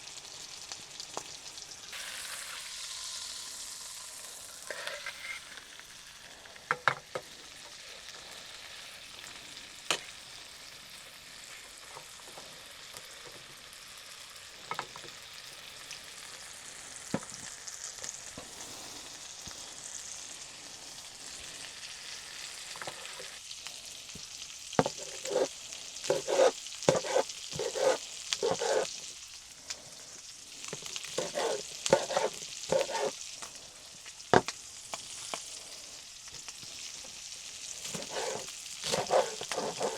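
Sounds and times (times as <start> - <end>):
food sizzling in a frying pan: 0.0 - 39.9
utensil scraping a pan: 4.6 - 5.7, 24.8 - 29.1, 30.7 - 33.2, 37.8 - 39.9.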